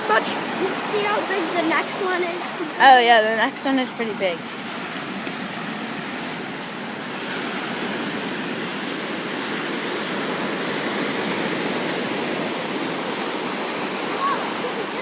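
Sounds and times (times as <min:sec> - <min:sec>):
ocean surf washing ashore: 0:00.0 - 0:15.0.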